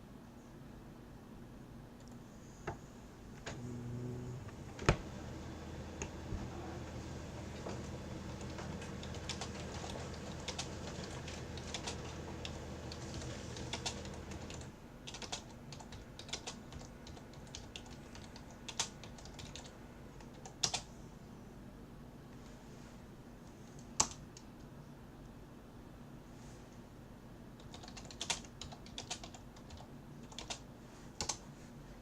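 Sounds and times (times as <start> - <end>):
low steady hum: 0.0 - 32.0
computer keyboard typing: 7.3 - 20.9, 23.8 - 24.5, 27.6 - 30.6, 31.2 - 31.4.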